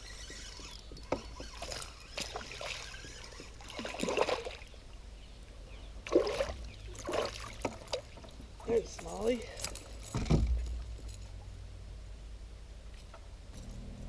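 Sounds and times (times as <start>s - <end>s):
water splashing around kayak: 1.5s - 4.8s, 6.0s - 11.2s.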